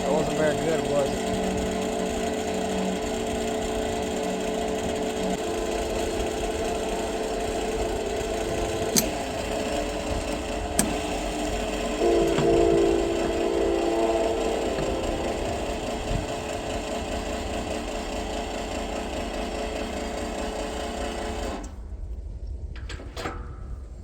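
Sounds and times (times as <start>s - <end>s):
motor running: 0.0s - 21.8s
sharp clicks: 8.8s - 11.6s.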